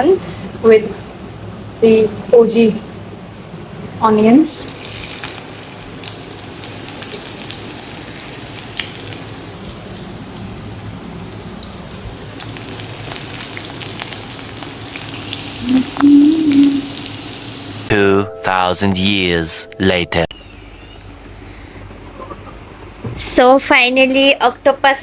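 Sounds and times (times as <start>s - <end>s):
onions sizzling in oil: 4.7s - 17.9s
short pitched sound: 15.6s - 17.1s.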